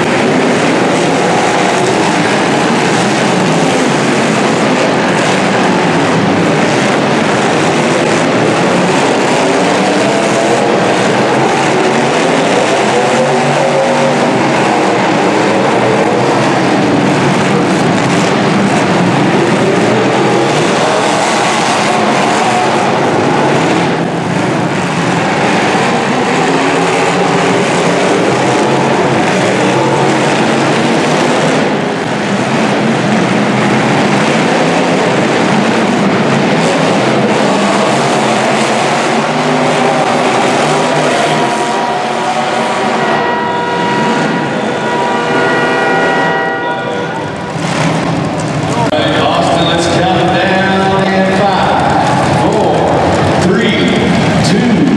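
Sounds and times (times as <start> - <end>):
steady horn tone: 0.0 - 24.2, 36.4 - 47.9
car engines revving: 0.0 - 54.9
cars crashing: 0.0 - 54.9.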